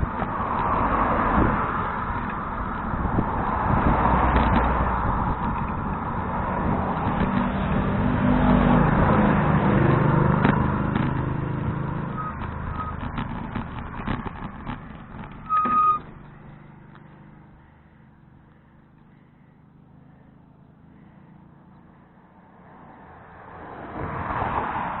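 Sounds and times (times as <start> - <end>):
motor vehicle passing: 0.0 - 25.0
vehicle approaching: 0.0 - 25.0
high-pitched squeal: 12.0 - 13.0, 15.3 - 16.2.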